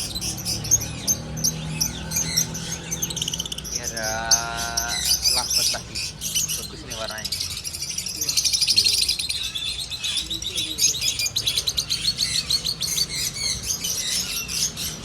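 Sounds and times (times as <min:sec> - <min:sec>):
birds chirping: 0:00.0 - 0:15.0.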